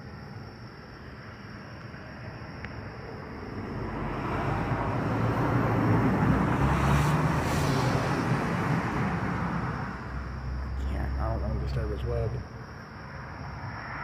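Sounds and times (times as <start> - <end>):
vehicle engine rumble passing: 3.2 - 14.0.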